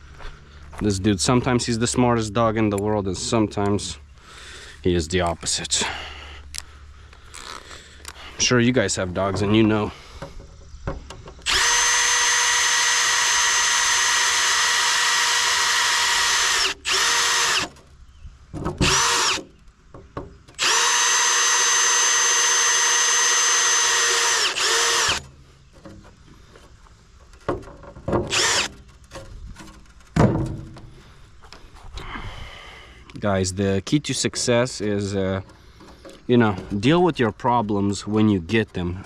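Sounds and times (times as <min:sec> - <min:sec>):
power drill whining: 0:11.4 - 0:17.8, 0:18.8 - 0:19.5, 0:20.5 - 0:25.3, 0:28.3 - 0:28.8.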